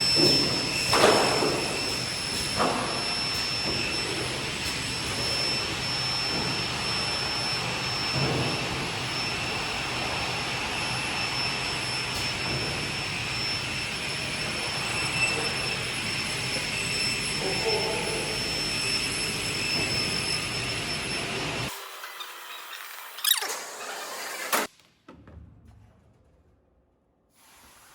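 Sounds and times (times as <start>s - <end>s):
high machine whine: 0.0s - 24.7s
machinery hiss: 27.4s - 27.9s.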